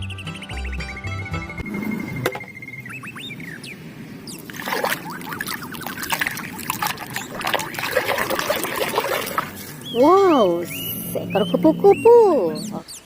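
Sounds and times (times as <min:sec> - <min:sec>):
water splashing and trickling: 0:04.3 - 0:12.4.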